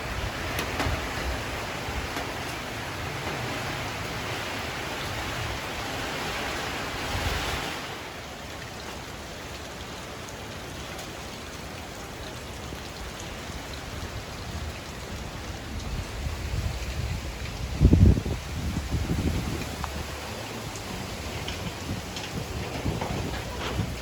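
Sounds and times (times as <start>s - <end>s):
wind and rain rushing: 0.0s - 24.0s
wind buffeting microphone: 13.8s - 24.0s.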